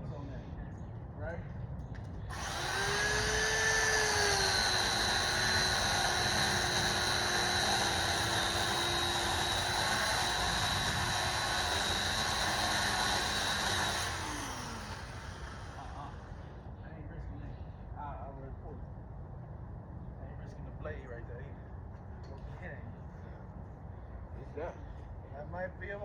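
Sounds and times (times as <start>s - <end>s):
chainsaw cutting wood: 2.3s - 16.4s.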